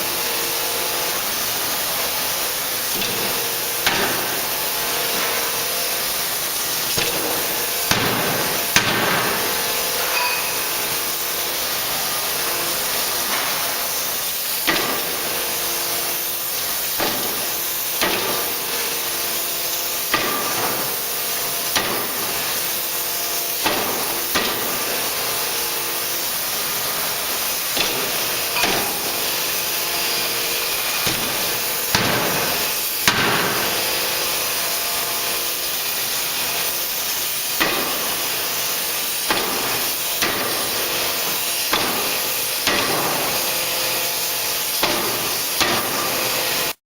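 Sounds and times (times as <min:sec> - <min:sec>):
forging hammer striking: 0:02.9 - 0:05.5, 0:06.9 - 0:11.0, 0:14.7 - 0:15.3, 0:16.9 - 0:18.7, 0:20.1 - 0:21.0, 0:21.7 - 0:22.4, 0:27.7 - 0:34.0, 0:37.6 - 0:38.3, 0:39.2 - 0:43.5, 0:44.8 - 0:46.1.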